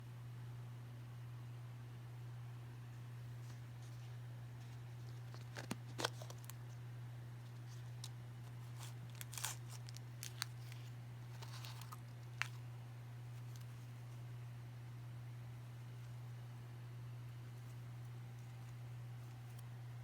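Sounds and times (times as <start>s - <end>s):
low electrical hum: 0.0s - 20.0s
packaging clicks: 5.0s - 6.6s, 8.0s - 12.6s
packaging crinkling and tearing: 5.0s - 6.7s, 7.5s - 12.6s, 13.4s - 13.9s.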